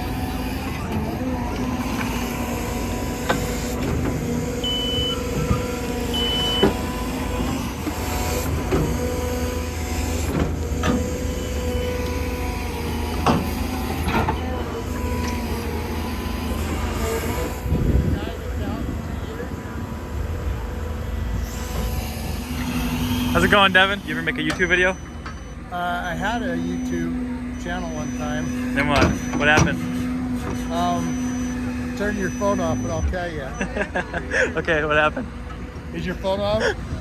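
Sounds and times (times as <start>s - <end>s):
excavator diesel engine running: 0.0s - 37.0s
short high beeps: 4.6s - 5.2s
machine knocks and clanks: 28.9s - 30.6s.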